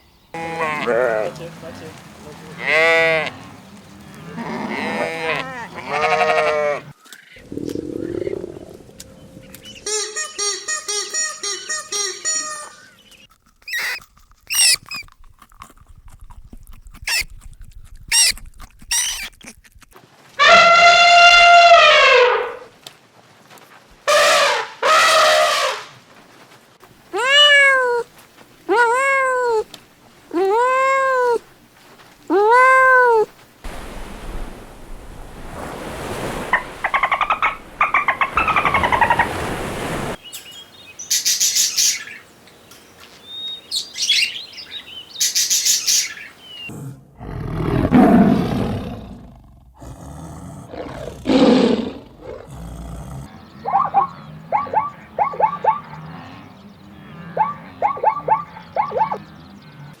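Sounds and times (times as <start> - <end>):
meow-like calls: 0.4 - 1.3, 2.6 - 3.4, 4.2 - 6.9, 27.1 - 28.1, 28.7 - 29.7, 30.3 - 31.5, 32.3 - 33.3
low drawn-out animal calls: 2.2 - 9.9, 20.4 - 22.7, 36.3 - 39.5, 51.2 - 60.0
high chirping: 9.6 - 15.1.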